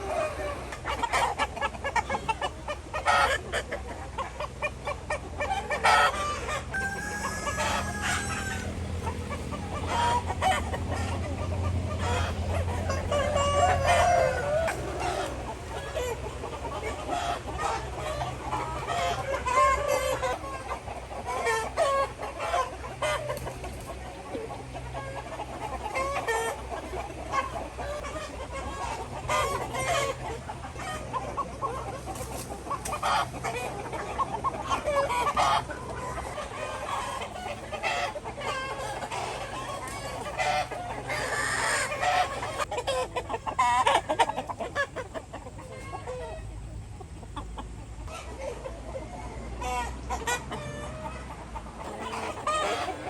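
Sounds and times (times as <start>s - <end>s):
chickens clucking and squawking: 0.0s - 53.0s
rooster crowing: 6.7s - 8.8s, 13.2s - 15.0s.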